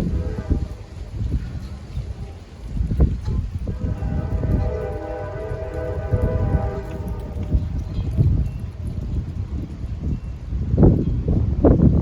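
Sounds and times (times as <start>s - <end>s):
faint train horn: 0.0s - 2.4s, 3.6s - 8.1s
freight train rumble: 0.0s - 12.0s
wind buffeting microphone: 0.0s - 12.0s.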